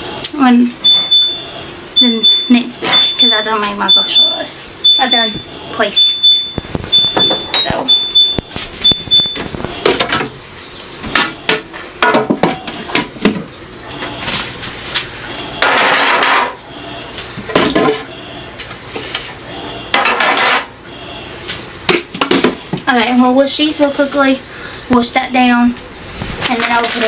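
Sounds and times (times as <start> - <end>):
high electronic beep: 0.8 - 9.9.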